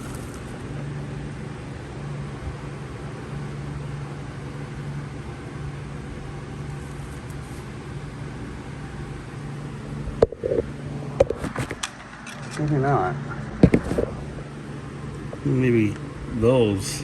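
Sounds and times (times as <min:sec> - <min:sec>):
fan hum and hiss: 0:00.0 - 0:17.0.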